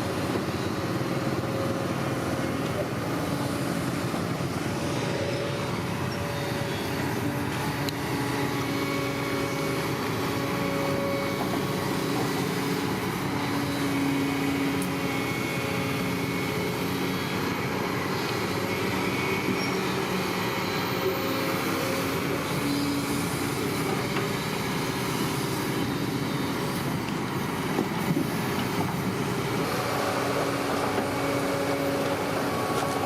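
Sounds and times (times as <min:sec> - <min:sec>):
bulldozer diesel engine running: 0:00.0 - 0:33.0.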